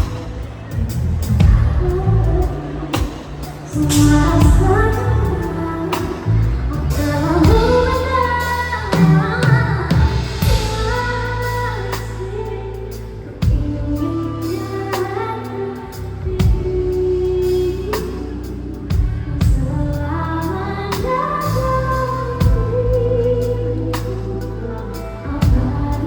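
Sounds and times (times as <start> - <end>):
drum kit: 0.0 - 15.2
low bass notes: 0.0 - 26.0
woman singing: 0.0 - 26.0.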